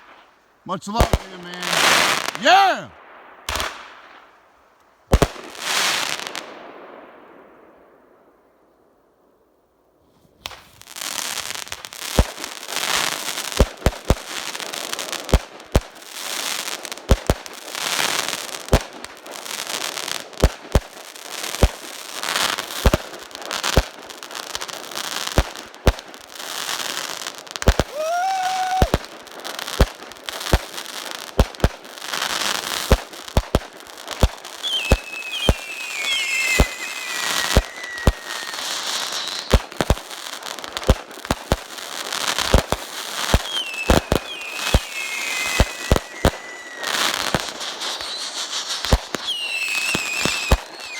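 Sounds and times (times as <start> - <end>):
fireworks crackle: 0.0 - 4.4, 5.1 - 7.4, 10.2 - 50.9
fireworks bangs: 0.7 - 4.3, 27.6 - 50.9
falling whistles: 27.9 - 29.0, 34.6 - 39.7, 43.4 - 50.9
rising whistle: 34.6 - 39.5, 43.5 - 50.9.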